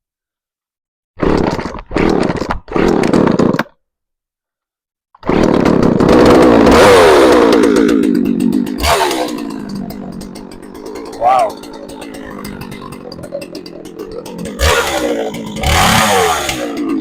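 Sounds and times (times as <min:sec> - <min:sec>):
chainsaw pull-start attempts: 0:01.2 - 0:03.8, 0:05.2 - 0:17.0
chainsaw running at high revs: 0:05.2 - 0:17.0.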